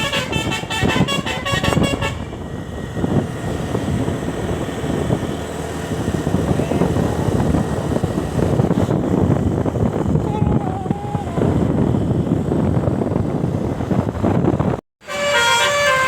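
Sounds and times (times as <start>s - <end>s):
multi-tone bus horn melody: 0.0s - 2.7s, 15.0s - 16.0s
bus engine rumble: 0.0s - 16.0s
road noise: 0.0s - 16.0s.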